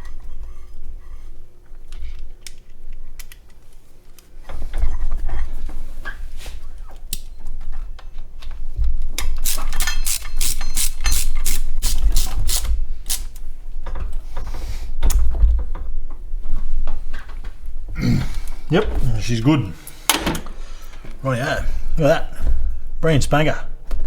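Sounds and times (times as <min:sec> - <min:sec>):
ratchet wrench clicking: 0:09.3 - 0:13.4.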